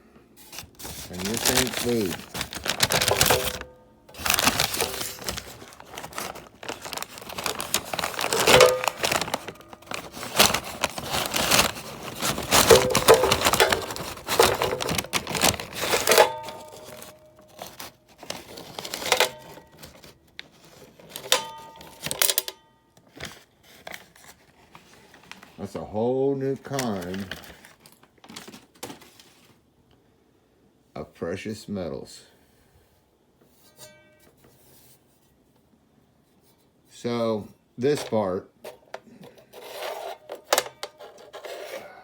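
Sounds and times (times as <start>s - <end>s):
packaging crinkling: 0.4s - 22.5s, 23.1s - 25.6s, 26.6s - 29.6s.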